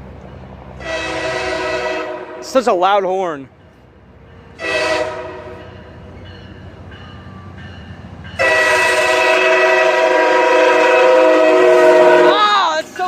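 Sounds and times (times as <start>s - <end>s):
passing train rumble: 0.0s - 13.0s
train air horn chord: 0.8s - 2.6s, 4.6s - 5.8s, 8.4s - 12.5s.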